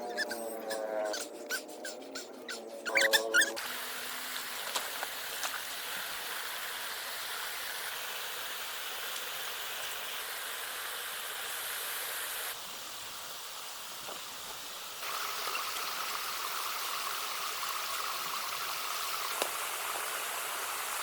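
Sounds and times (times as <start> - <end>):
rushing water: 3.6 - 12.6, 13.5 - 21.0.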